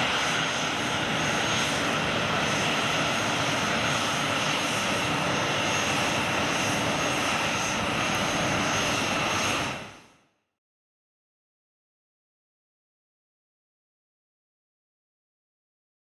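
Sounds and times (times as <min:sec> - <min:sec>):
jet engines running: 0:00.0 - 0:10.2.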